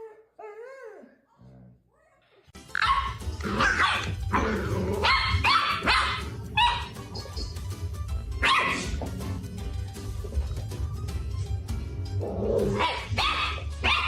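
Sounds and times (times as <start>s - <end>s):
background music: 2.5s - 14.0s
dog barking: 2.8s - 4.4s, 5.0s - 7.0s, 8.4s - 9.0s, 12.7s - 14.0s.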